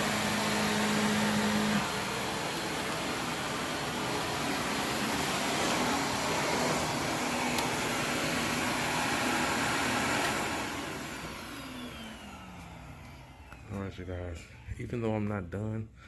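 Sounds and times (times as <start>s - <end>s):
vacuum cleaner running on carpet: 0.0s - 14.0s.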